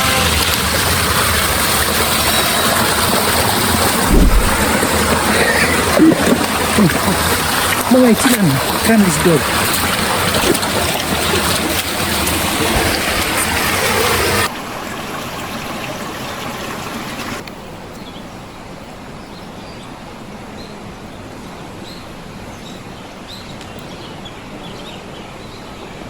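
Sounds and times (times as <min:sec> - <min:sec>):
river water rushing: 0:00.0 - 0:15.6.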